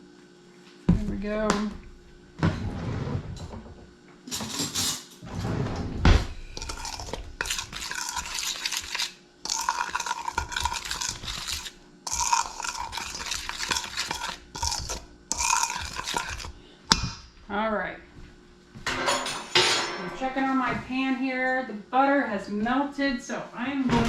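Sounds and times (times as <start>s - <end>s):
utensil scraping mixing bowl: 6.5s - 16.6s.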